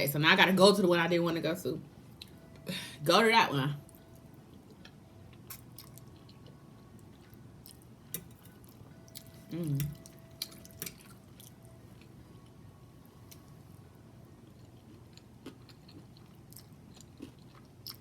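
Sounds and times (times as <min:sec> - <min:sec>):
person chewing food: 0:03.9 - 0:12.1, 0:14.4 - 0:18.0
person humming: 0:09.4 - 0:10.0.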